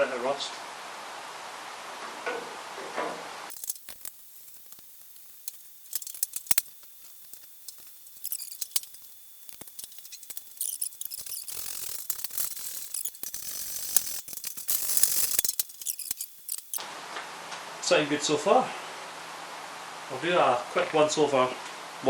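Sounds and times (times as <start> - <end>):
hissy scraping and rustling: 1.9 - 16.8.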